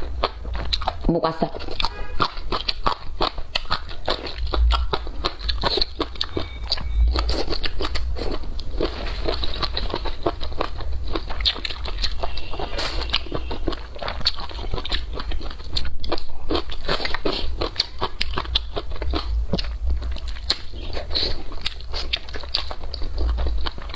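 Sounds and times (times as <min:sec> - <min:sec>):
crunching and chewing food: 0:00.0 - 0:23.9
low rumble: 0:03.9 - 0:15.4, 0:17.6 - 0:23.9.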